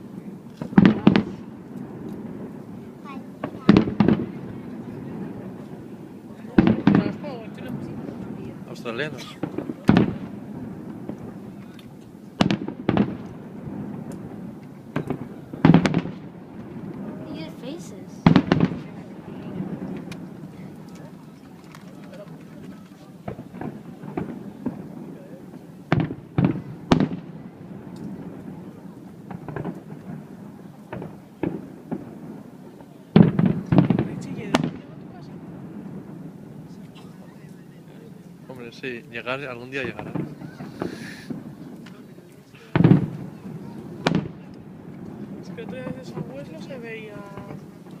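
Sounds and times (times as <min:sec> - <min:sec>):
firework shells bursting: 0:00.0 - 0:48.0.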